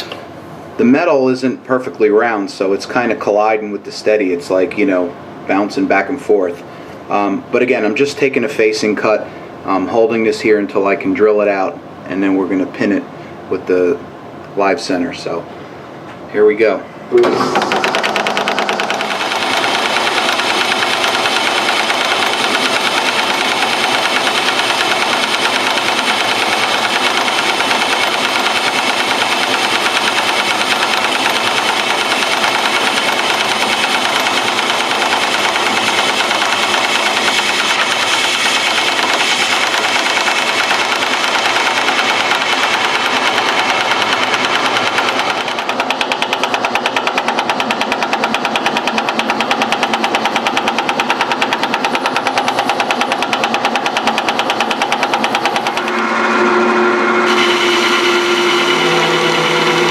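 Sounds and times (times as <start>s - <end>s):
metal lathe rattling: 17.2s - 55.9s.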